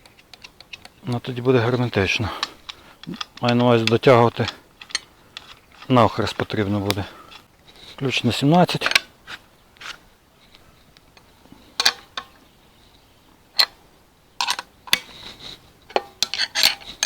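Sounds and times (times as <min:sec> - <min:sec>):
spanner clinking on metal nuts: 0:00.0 - 0:07.5, 0:11.8 - 0:12.4, 0:14.4 - 0:15.2, 0:15.9 - 0:17.0.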